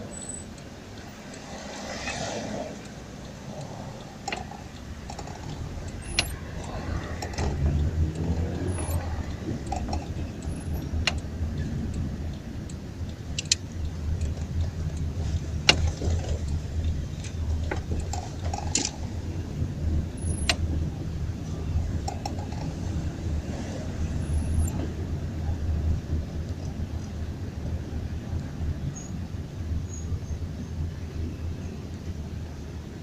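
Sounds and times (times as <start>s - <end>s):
car engine rumble: 0.0s - 33.0s
sharp clicks and rattles: 2.8s - 23.4s.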